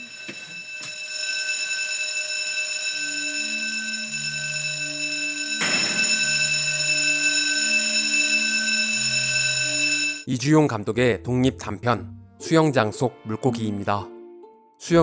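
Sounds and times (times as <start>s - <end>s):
high ringing tone: 0.0s - 10.3s.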